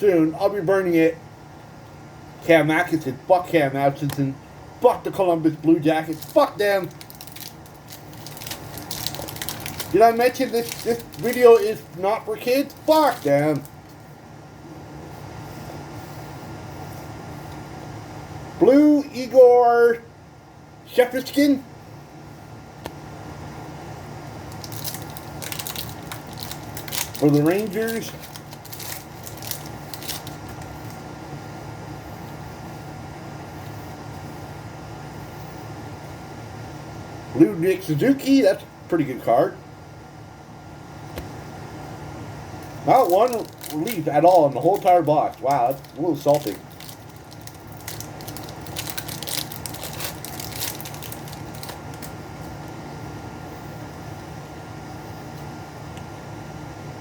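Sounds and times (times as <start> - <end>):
low room hum: 0.0 - 57.0
wrapping crinkling: 5.4 - 14.1, 24.2 - 31.0, 42.6 - 52.7
trading cards rustling and clicking: 5.6 - 14.0, 24.5 - 31.0, 42.9 - 52.2.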